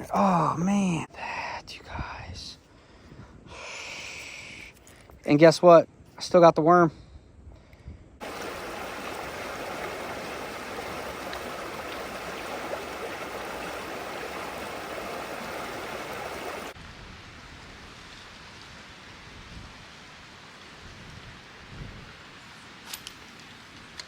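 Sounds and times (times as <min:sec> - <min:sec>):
creek water flowing: 0:08.2 - 0:16.8.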